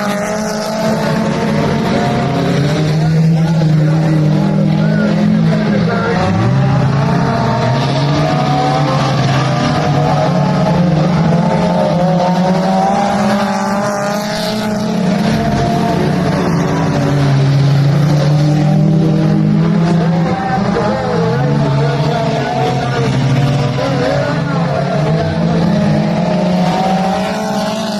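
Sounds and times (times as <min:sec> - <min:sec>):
race car engine revving: 0:00.0 - 0:27.9.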